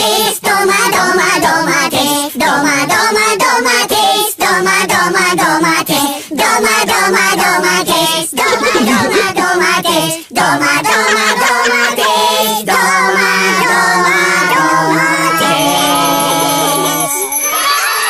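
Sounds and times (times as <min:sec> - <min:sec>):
person singing: 0:05.0 - 0:17.3.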